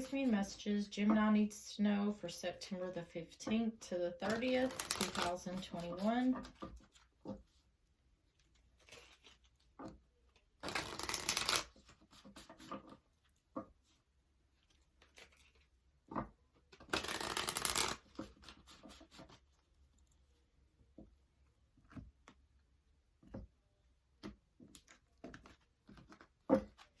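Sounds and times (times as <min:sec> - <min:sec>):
cards being shuffled: 0:04.2 - 0:07.1, 0:08.5 - 0:09.6, 0:10.6 - 0:13.0, 0:14.6 - 0:15.7, 0:16.7 - 0:19.5.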